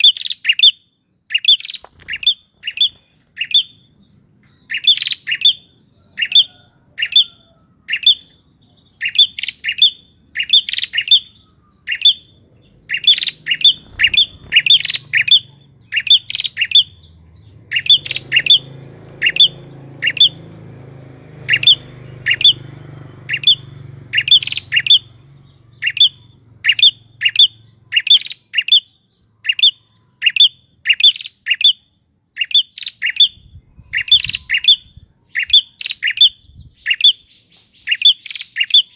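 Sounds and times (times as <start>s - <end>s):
bird calling repeatedly: 0.0s - 38.9s.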